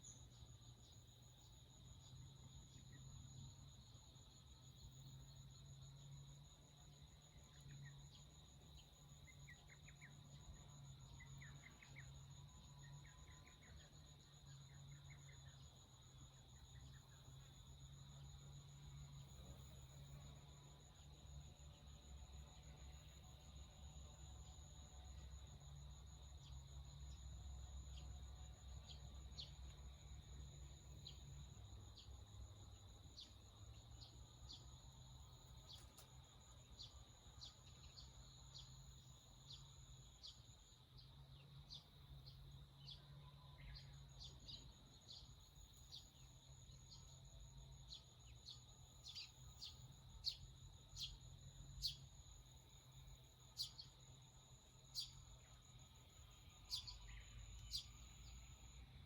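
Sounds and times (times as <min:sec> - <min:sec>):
high insect drone: 0:00.0 - 0:59.0
small birds chirping: 0:35.6 - 0:38.7, 0:47.9 - 0:51.2, 0:51.8 - 0:52.1, 0:53.5 - 0:54.2, 0:54.9 - 0:58.5.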